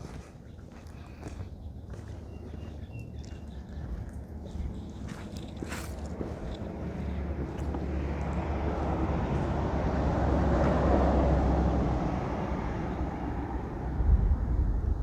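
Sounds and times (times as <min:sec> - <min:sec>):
steady low rumble: 0:00.1 - 0:10.0, 0:13.7 - 0:15.0
vehicle passing by: 0:02.2 - 0:15.0.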